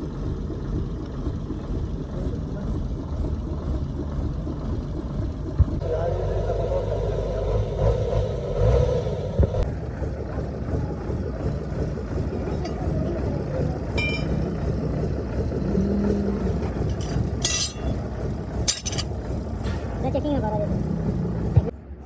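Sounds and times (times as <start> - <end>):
low mechanical rumble: 0.0 - 22.0
ringing metallic clink: 12.5 - 14.6, 16.5 - 20.1.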